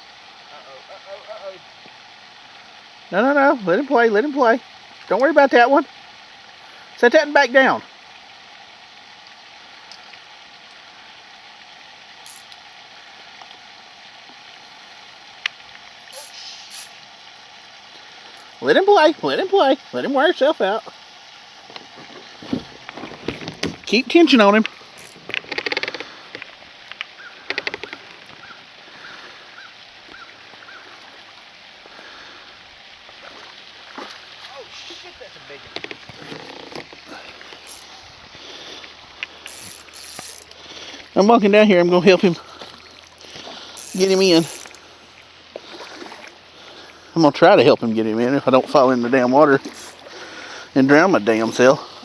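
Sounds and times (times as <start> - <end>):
outdoor background hiss: 0.0 - 52.0
fishing reel clicking: 12.2 - 12.6, 15.4 - 17.0, 24.6 - 26.5, 37.5 - 38.0, 39.2 - 41.0, 43.8 - 44.8.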